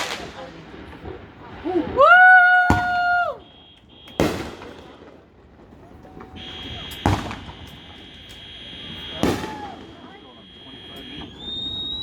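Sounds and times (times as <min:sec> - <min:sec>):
firework bangs: 0:00.0 - 0:12.0
high whistle-like tone: 0:09.1 - 0:12.0.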